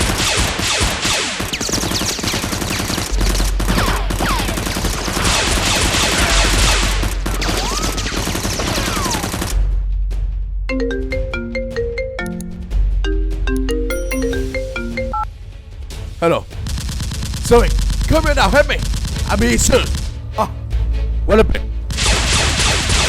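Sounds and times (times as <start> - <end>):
machine-gun fire: 0.0 - 9.7, 16.6 - 20.2, 21.9 - 23.0
music with pulsing deep bass: 3.1 - 4.8, 9.5 - 11.5
marimba-like ringtone melody: 10.7 - 15.3.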